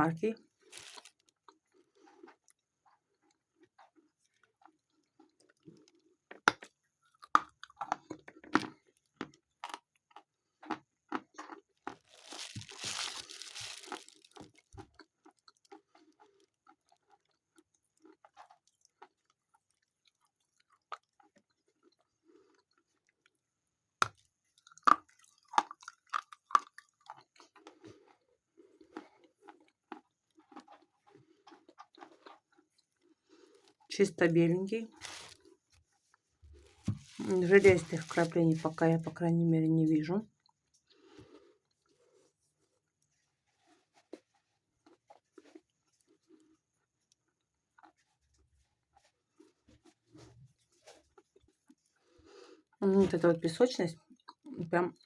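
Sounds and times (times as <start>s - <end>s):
quiet chewing: 0.4s - 33.9s, 34.9s - 38.9s, 40.3s - 52.8s, 54.0s - 55.0s.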